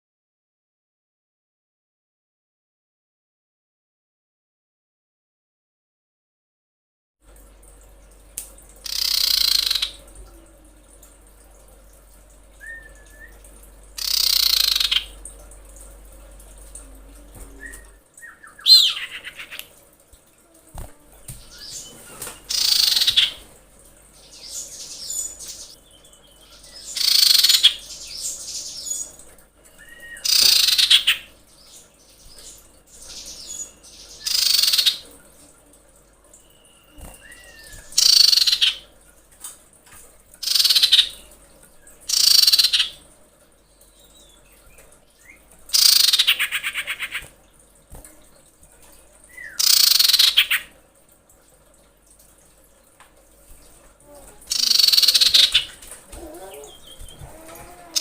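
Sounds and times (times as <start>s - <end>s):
bird calling: 8.8s - 10.0s, 14.0s - 15.2s, 17.4s - 19.6s, 54.1s - 58.0s.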